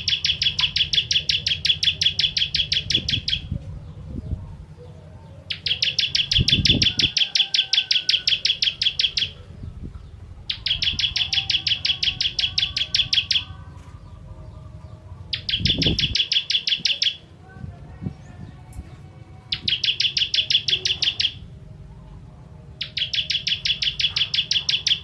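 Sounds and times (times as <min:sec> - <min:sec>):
bird singing rapid trills: 0:00.0 - 0:03.6, 0:05.4 - 0:09.5, 0:10.5 - 0:13.6, 0:15.3 - 0:17.2, 0:19.4 - 0:21.5, 0:22.8 - 0:25.0.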